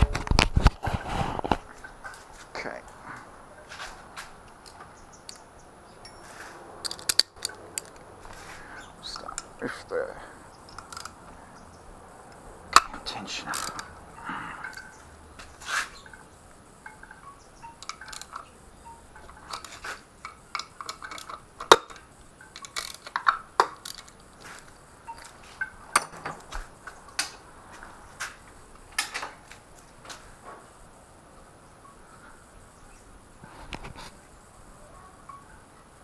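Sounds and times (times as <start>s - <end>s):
metal engine parts clanking: 6.8s - 8.1s, 10.6s - 11.2s, 12.7s - 27.4s.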